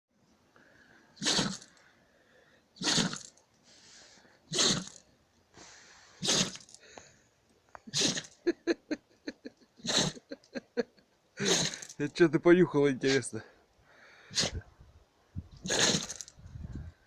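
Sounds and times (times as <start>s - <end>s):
dog sneezing: 1.2s - 1.7s, 2.8s - 3.3s, 4.5s - 5.0s, 6.2s - 6.6s, 7.9s - 8.3s, 9.8s - 10.2s, 11.4s - 11.8s, 14.3s - 14.6s, 15.6s - 16.2s.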